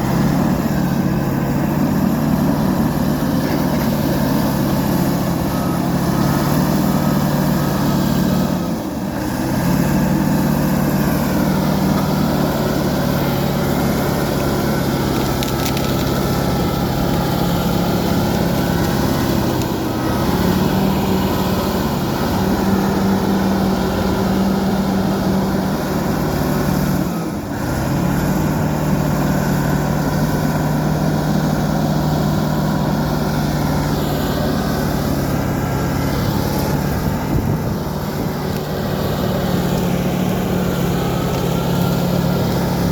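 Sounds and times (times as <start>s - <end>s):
bulldozer diesel engine running: 0.0s - 42.9s.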